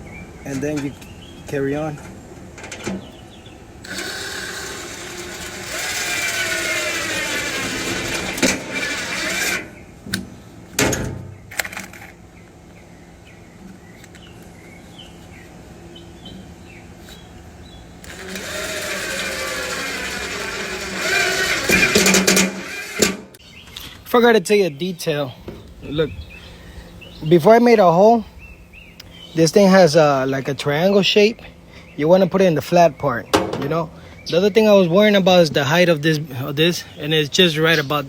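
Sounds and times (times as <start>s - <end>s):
power drill running: 3.8s - 9.9s, 18.0s - 23.4s.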